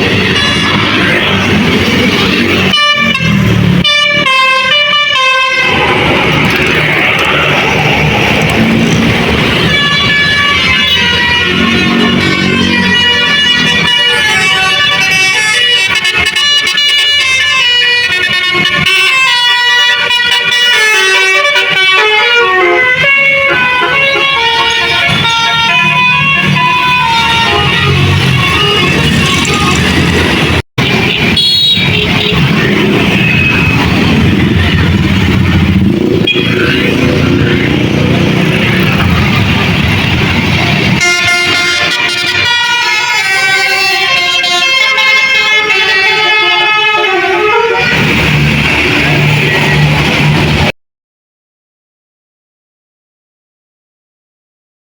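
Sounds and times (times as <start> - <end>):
musical bus horn tune: 0.0 - 1.0, 2.6 - 5.7, 9.4 - 30.0, 31.1 - 32.6, 41.0 - 48.2
bus engine rumble: 0.0 - 17.4, 21.4 - 44.6, 45.6 - 50.7
traffic noise: 0.0 - 50.8.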